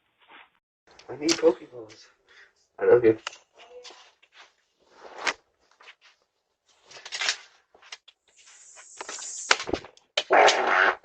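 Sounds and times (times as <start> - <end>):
steady hiss: 8.3 - 9.8.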